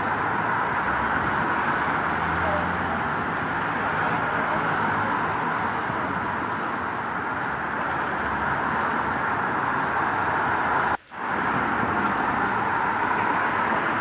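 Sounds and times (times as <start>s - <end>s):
city traffic: 0.0s - 14.0s
steady rain: 0.0s - 14.0s.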